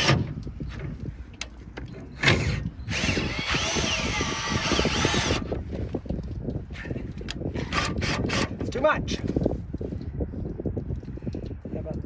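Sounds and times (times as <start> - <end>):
electric motor whining: 2.2 - 5.6.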